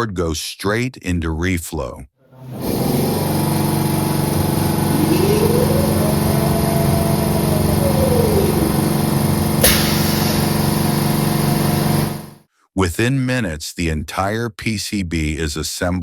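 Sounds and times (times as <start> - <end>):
machine hum: 2.4 - 12.4
faint tone rising and falling: 4.3 - 10.9.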